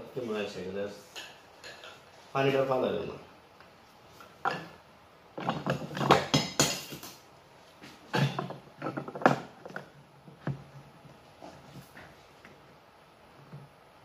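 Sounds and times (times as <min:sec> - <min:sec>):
plastic pipes knocking and clinking: 0:05.4 - 0:07.2.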